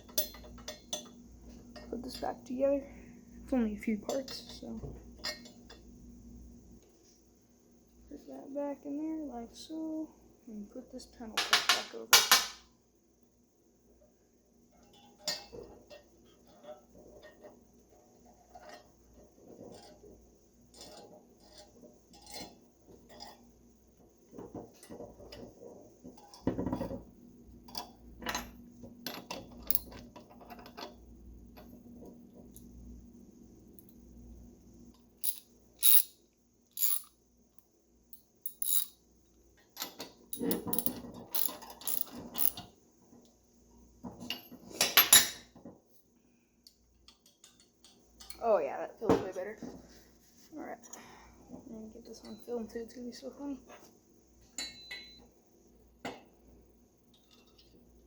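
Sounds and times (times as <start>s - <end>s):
faint metal clinks and taps: 0.0s - 2.0s, 34.9s - 36.1s, 36.8s - 37.1s, 38.2s - 39.0s, 39.8s - 42.7s, 54.5s - 55.3s
metal parts clinking: 29.2s - 30.8s, 35.2s - 36.2s, 36.8s - 37.1s, 38.5s - 39.0s, 40.3s - 42.6s
metal parts rattling clatter: 35.2s - 36.1s, 36.8s - 37.1s, 38.5s - 38.9s, 40.4s - 42.6s.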